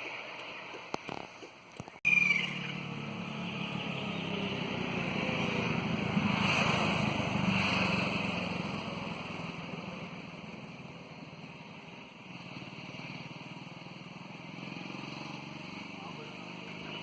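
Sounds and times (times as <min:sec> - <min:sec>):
short high bird call: 0:02.0 - 0:02.8
vehicle engine passing by: 0:02.1 - 0:17.0.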